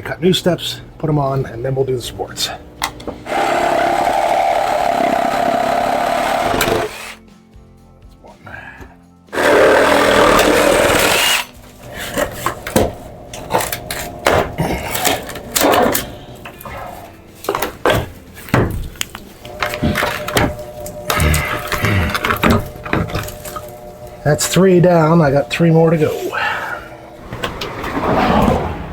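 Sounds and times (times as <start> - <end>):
music: 0.0 - 27.5
power saw cutting wood: 3.2 - 7.2, 9.3 - 18.1, 19.5 - 27.6.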